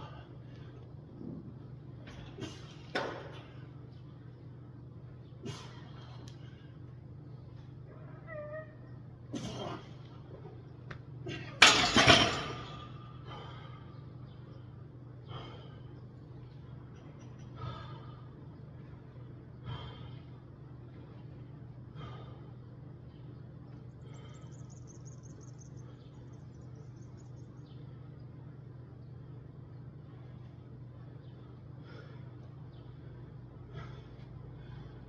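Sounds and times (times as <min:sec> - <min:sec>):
steady low hum: 0:00.0 - 0:35.0
man breathing hard: 0:13.0 - 0:22.9, 0:31.5 - 0:35.0.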